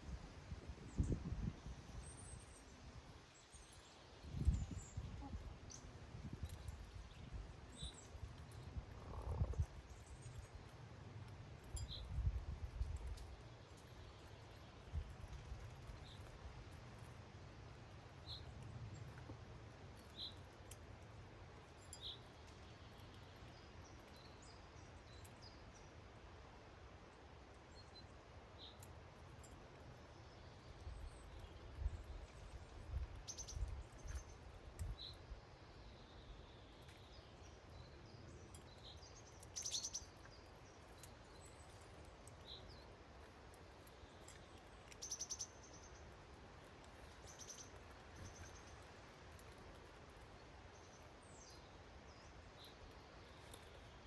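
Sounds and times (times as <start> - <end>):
small bird chirps: 33.2 - 35.2, 35.8 - 42.9, 43.9 - 46.1, 47.0 - 48.8.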